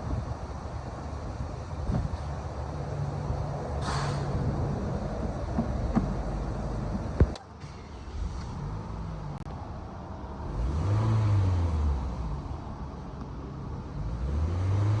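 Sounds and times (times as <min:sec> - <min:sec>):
car engine revving: 0:10.4 - 0:12.5, 0:13.9 - 0:15.0.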